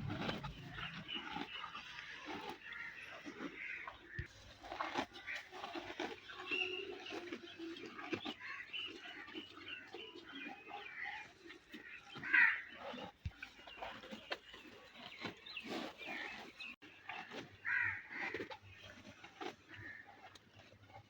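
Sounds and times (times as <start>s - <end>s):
bird calling: 0.0s - 4.3s
buffalo chewing grass: 0.0s - 21.0s.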